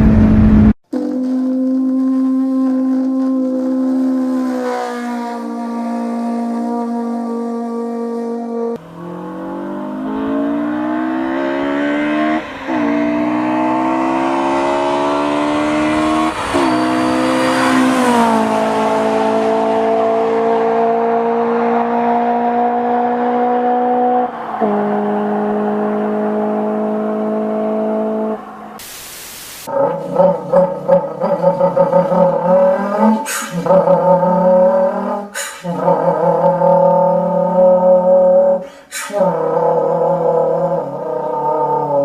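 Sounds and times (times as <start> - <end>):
person imitating car engine: 29.7 - 42.0.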